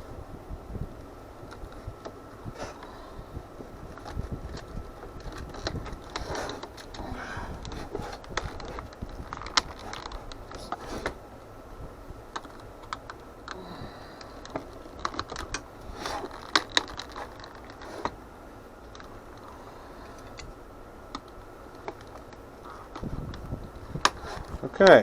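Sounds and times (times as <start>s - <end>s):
plastic parts clicking and tapping: 3.8s - 7.0s, 7.6s - 11.2s, 12.3s - 13.6s, 14.2s - 18.2s.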